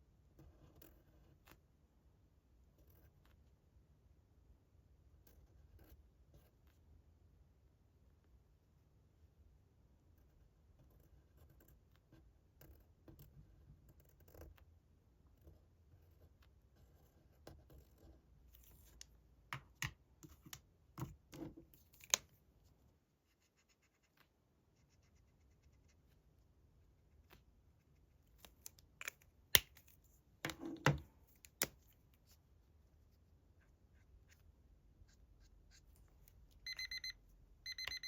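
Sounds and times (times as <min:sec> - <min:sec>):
pencil scratching on paper: 0:23.2 - 0:26.2.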